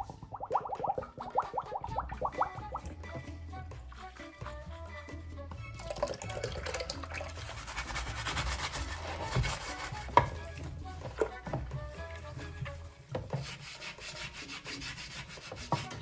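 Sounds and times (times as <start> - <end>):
soft background music: 0.0 - 16.0
rubbing and scraping metal part: 7.3 - 16.0.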